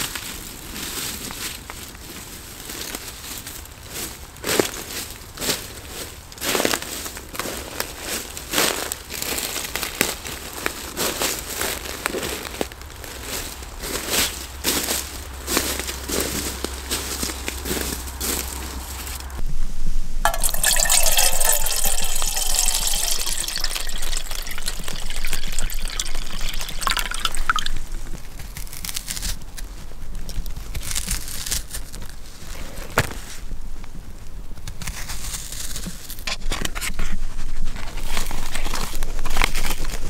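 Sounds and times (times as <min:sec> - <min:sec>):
liquid pouring into container: 0:20.3 - 0:28.2.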